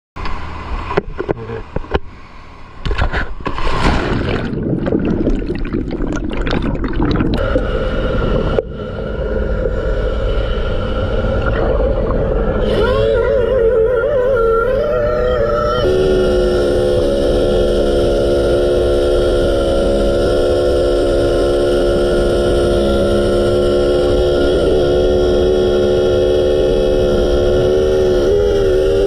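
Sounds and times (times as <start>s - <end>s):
steady hum: 0.2s - 29.0s
water gurgling and sloshing: 0.4s - 15.9s.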